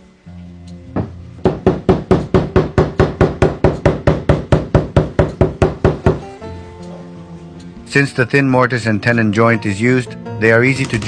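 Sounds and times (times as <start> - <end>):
rapid knocking on timber: 1.0 - 6.2.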